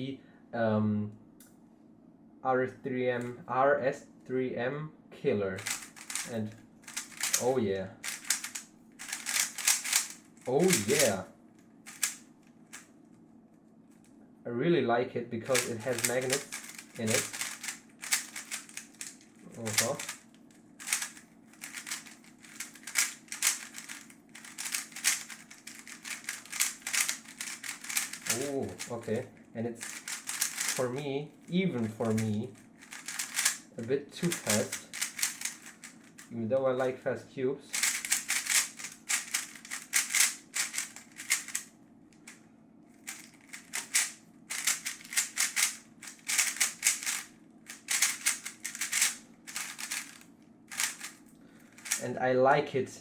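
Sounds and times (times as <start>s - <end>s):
plastic puzzle cube clicking: 5.6s - 6.3s, 6.9s - 11.1s, 11.9s - 12.8s, 15.5s - 20.2s, 20.8s - 28.9s, 29.8s - 30.8s, 32.8s - 33.6s, 34.2s - 36.2s, 37.8s - 41.6s, 43.1s - 51.1s.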